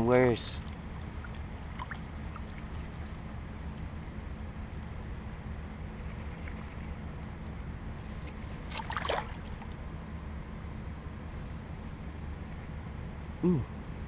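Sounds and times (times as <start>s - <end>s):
stream rumble: 0.0s - 10.2s.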